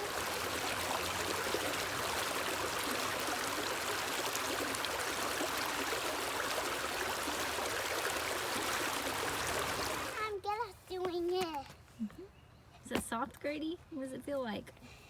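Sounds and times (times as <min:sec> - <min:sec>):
stream trickling water: 0:00.0 - 0:10.3.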